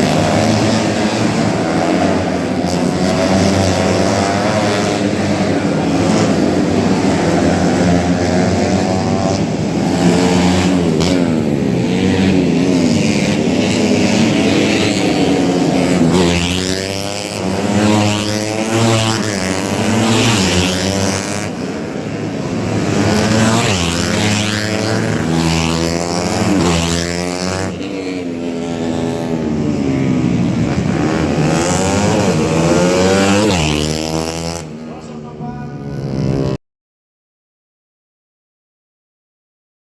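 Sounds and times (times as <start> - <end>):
racing motorcycles revving: 0.0 - 36.6.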